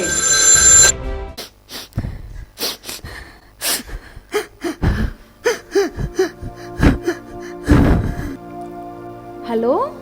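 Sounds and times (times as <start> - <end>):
person sobbing: 1.8 - 8.5
broken whimpering cries: 3.7 - 8.4.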